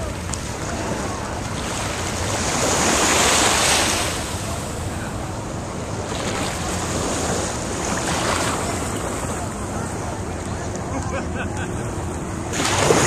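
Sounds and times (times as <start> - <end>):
small waves breaking on beach: 0.0 - 5.0, 5.9 - 10.0, 12.5 - 13.0.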